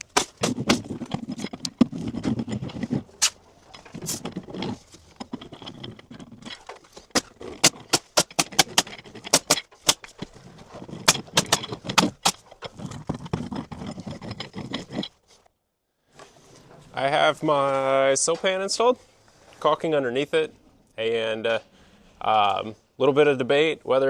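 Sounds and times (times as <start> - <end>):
low rustling and scraping: 0.0 - 15.5, 16.1 - 19.7.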